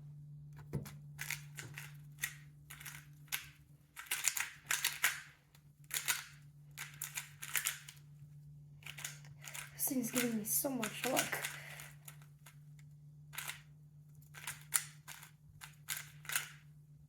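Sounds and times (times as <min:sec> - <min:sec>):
plastic puzzle cube clicking: 0:01.2 - 0:08.0, 0:08.8 - 0:12.6, 0:13.3 - 0:13.7, 0:14.3 - 0:16.6.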